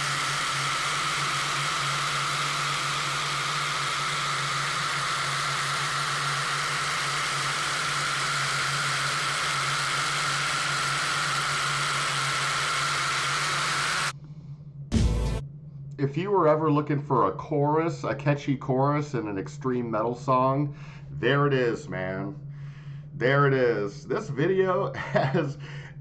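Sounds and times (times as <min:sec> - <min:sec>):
extreme metal music: 0:14.9 - 0:15.4.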